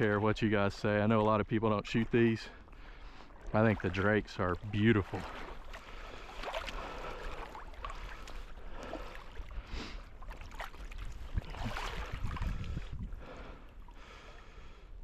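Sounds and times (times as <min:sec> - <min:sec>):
water sloshing against kayak hull: 0:00.0 - 0:15.0
wind rumble on microphone: 0:10.9 - 0:13.5.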